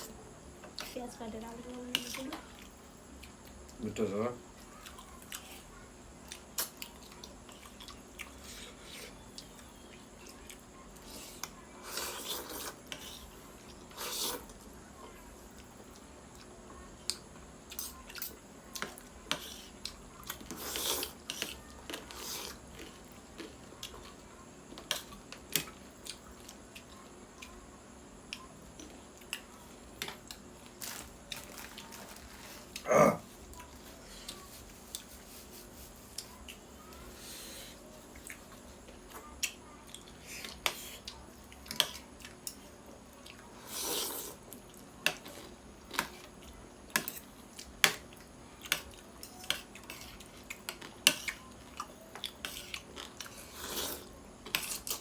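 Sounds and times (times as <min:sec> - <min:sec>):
chewing and wet mouth sounds: 0:06.2 - 0:14.6, 0:15.6 - 0:27.6, 0:38.1 - 0:55.0
cutlery clicking on bowl: 0:46.9 - 0:47.2.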